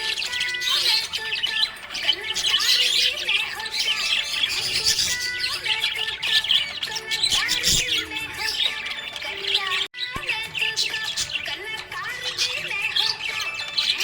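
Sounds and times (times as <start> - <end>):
budgerigars chirping and chattering: 0.0 - 14.0.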